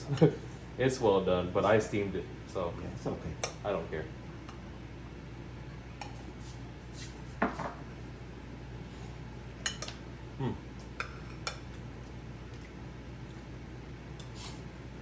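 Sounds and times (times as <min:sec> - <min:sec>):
low steady hum: 0:00.0 - 0:15.0
cutlery clinking on a plate: 0:09.6 - 0:10.0.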